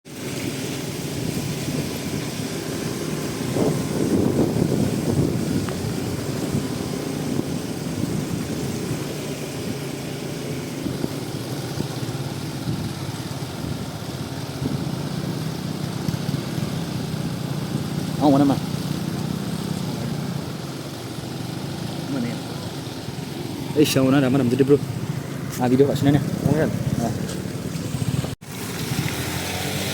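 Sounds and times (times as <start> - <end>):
scooter engine running: 0.2 - 29.9.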